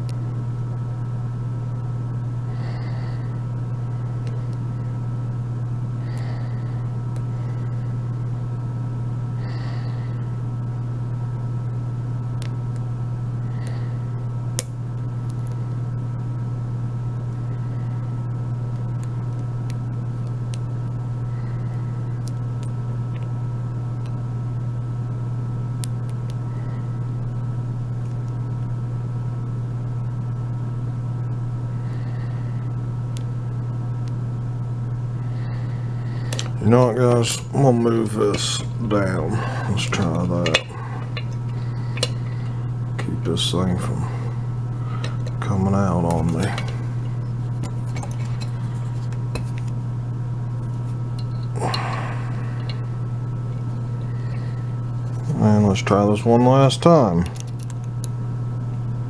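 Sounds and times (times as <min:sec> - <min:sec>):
steady low hum: 0:00.0 - 0:59.0
lock-picking tools clicking: 0:39.9 - 0:42.3, 0:57.3 - 0:58.1.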